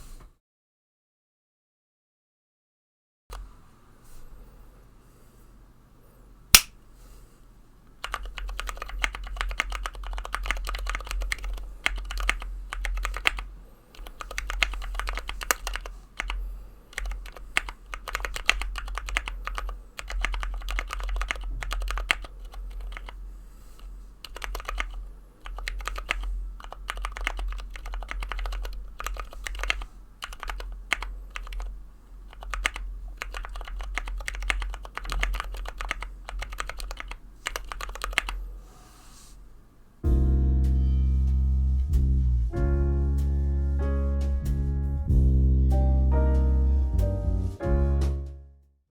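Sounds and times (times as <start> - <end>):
mechanical keyboard typing: 8.0 - 23.2, 24.2 - 31.7, 32.3 - 38.4.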